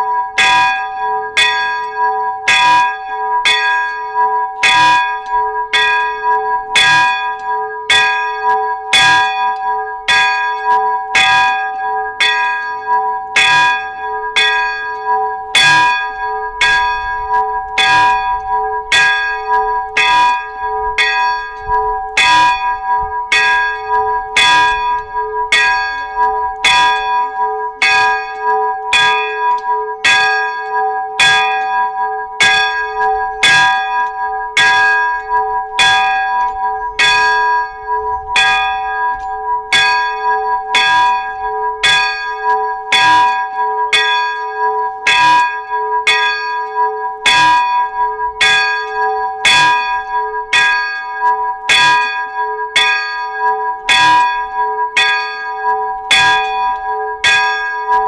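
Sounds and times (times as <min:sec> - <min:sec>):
church bell ringing: 0:00.0 - 0:58.0.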